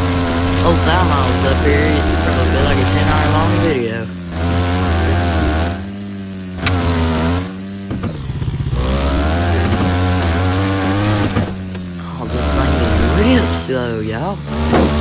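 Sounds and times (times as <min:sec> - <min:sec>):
atv engine revving: 0:00.0 - 0:15.0.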